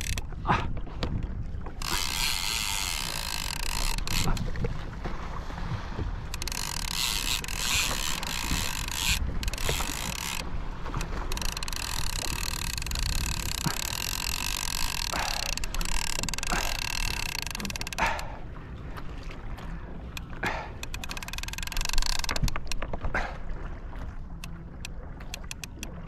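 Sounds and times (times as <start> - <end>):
fishing reel whirring: 0.0 - 0.3, 1.8 - 4.5, 6.3 - 18.2, 20.8 - 22.8.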